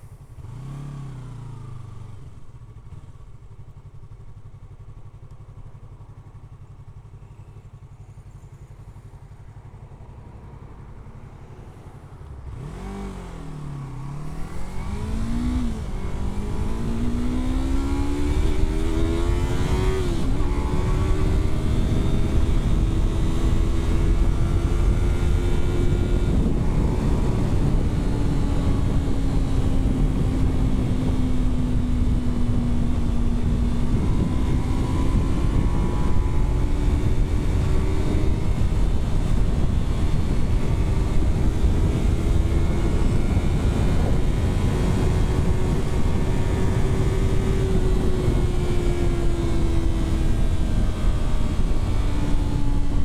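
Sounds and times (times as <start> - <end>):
motorcycle engine revving: 0.2 - 53.0.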